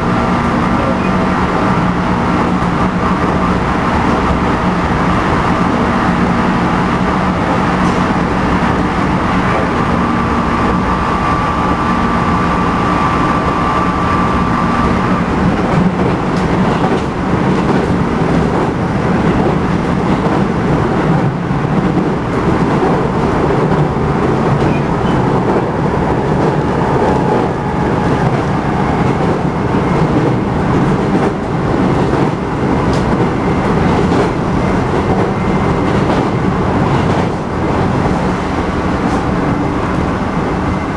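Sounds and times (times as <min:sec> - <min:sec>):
train traction motor whine: 0:00.0 - 0:16.5, 0:23.0 - 0:31.7
wheel and rail rumble: 0:00.0 - 0:40.9.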